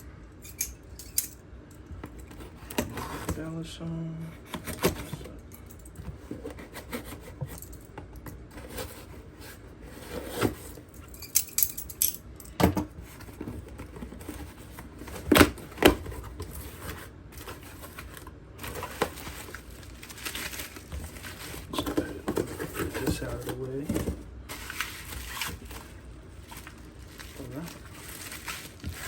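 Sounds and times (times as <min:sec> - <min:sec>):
packaging rustling and clicking: 0:13.0 - 0:29.0.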